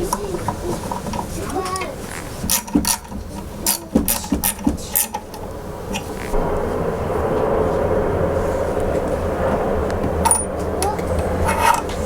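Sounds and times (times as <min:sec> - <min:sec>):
metal parts clicking and clacking: 0:00.0 - 0:06.3, 0:11.4 - 0:12.0
steady rushing noise: 0:00.0 - 0:12.0.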